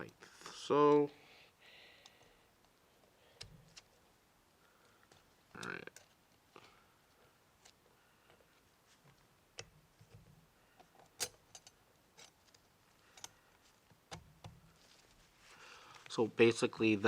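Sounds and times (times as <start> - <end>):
metal clips clicking and tapping: 11.2 - 12.3.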